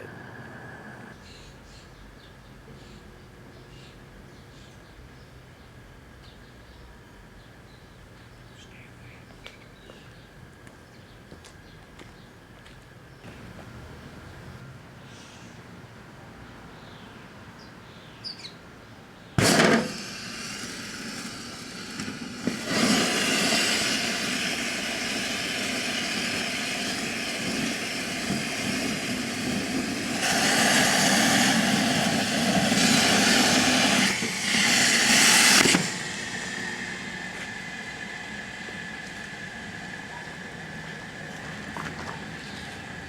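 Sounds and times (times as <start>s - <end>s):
firework sharp bang: 19.4s - 25.1s, 30.2s - 36.1s
firework hissing spray: 19.4s - 40.5s.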